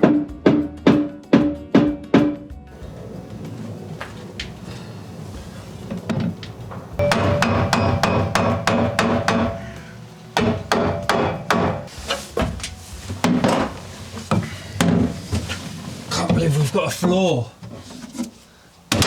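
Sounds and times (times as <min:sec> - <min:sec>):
hammer blows: 0:02.8 - 0:15.5.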